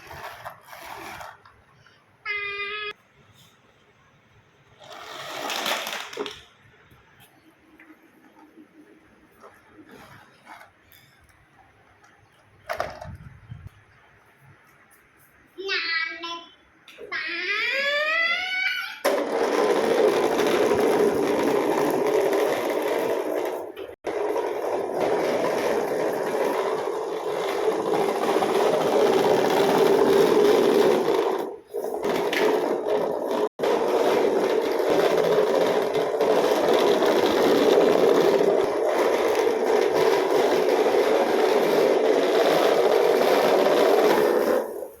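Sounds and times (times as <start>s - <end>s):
motorized toy scraping rattle: 4.8s - 6.2s, 19.5s - 45.0s.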